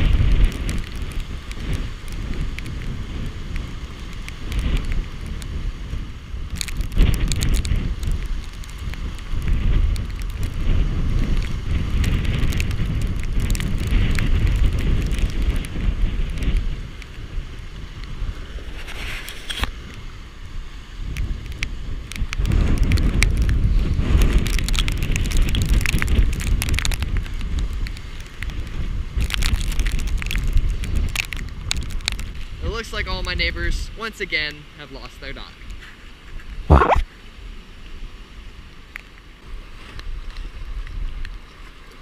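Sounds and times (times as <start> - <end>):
scattered crackles: 0.0 - 17.3, 18.0 - 20.0, 21.1 - 33.4, 34.5 - 37.1
strong wind gusting on microphone: 0.0 - 37.1
rain: 0.0 - 42.0.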